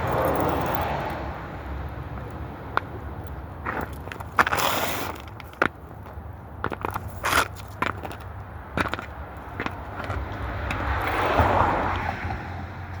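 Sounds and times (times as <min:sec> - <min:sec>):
cleats clacking and crunching: 0:01.9 - 0:11.6.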